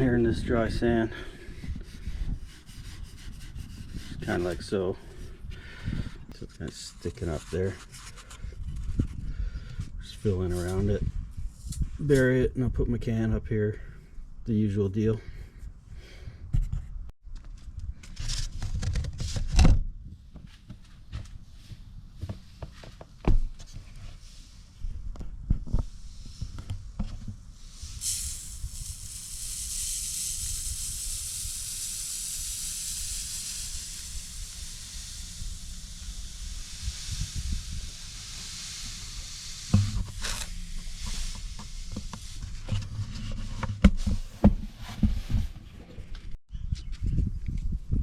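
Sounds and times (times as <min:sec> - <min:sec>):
sand pouring hiss: 0:25.9 - 0:26.6, 0:27.5 - 0:42.7.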